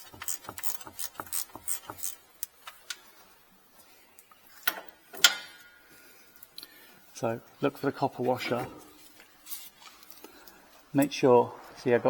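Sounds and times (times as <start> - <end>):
ratchet wrench clicking: 0.0 - 2.5.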